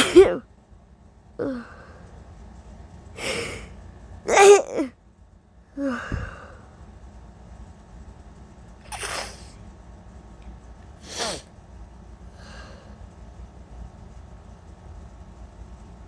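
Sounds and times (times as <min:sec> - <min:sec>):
woman sneezing: 0:00.0 - 0:00.4, 0:04.3 - 0:04.9
voiced catch of breath: 0:05.8 - 0:06.7, 0:12.4 - 0:13.0.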